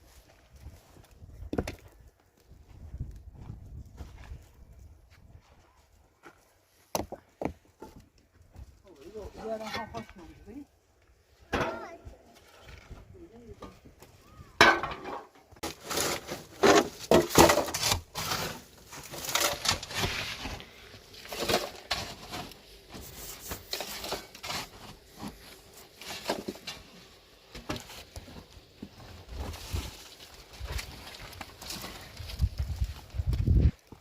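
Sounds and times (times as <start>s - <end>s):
hard objects knocking and scraping: 14.6s - 20.6s.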